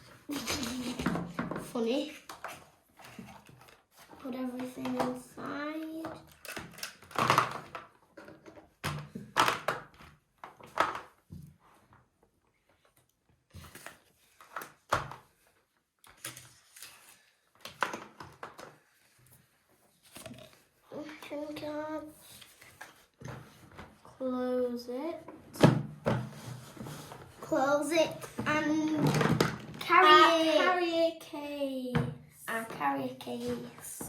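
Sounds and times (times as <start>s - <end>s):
toys knocking and clattering: 0.3s - 11.4s, 27.9s - 30.9s.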